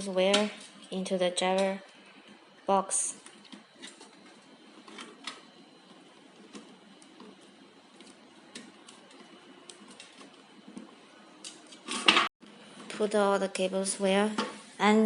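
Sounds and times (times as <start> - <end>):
cables clicking and rustling: 3.2 - 13.1.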